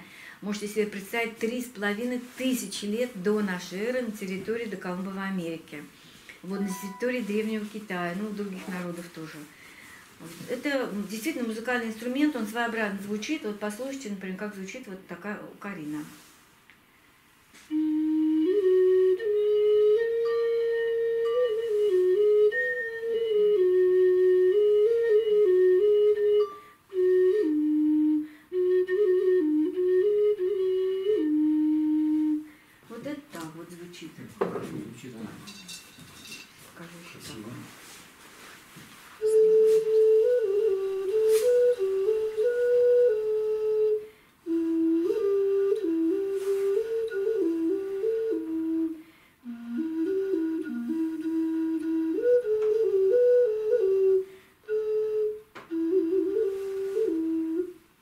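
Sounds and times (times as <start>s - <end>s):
ocarina melody: 6.4s - 13.5s, 17.6s - 32.6s, 37.3s - 58.0s.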